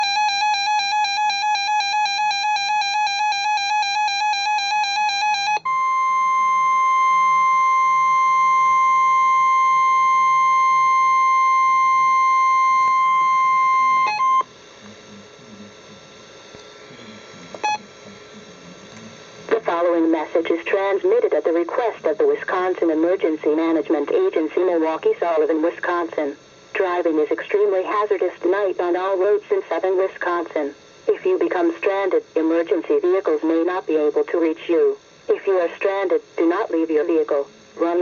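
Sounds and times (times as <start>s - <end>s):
steady warning alarm tone: 0.0s - 23.2s
rapidly pulsing alert beep: 17.6s - 17.8s.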